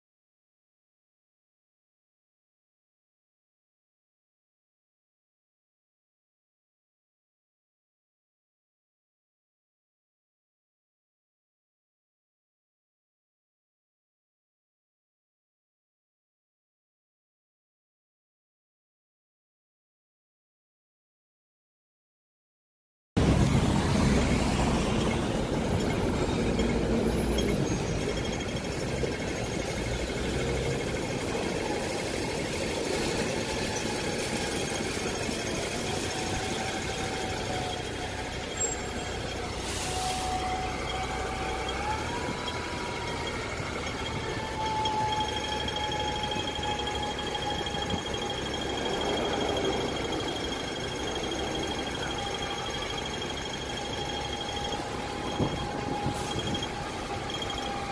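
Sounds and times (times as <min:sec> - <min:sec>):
bus engine rumble: 0:23.2 - 0:57.9
drivetrain whine: 0:23.2 - 0:57.9.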